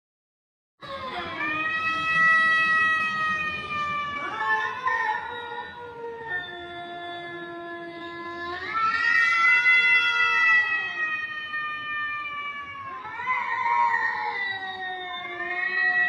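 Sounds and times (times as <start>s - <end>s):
cat yowling: 0.8s - 16.0s.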